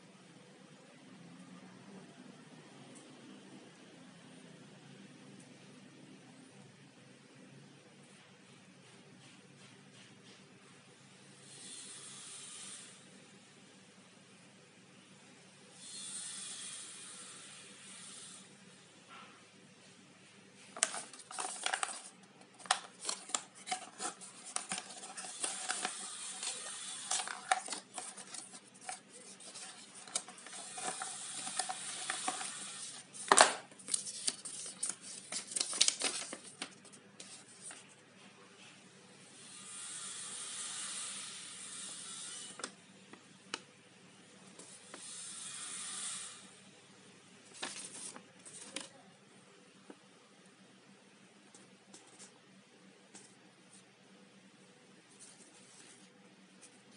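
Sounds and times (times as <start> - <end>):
packaging rustling: 20.7 - 37.8.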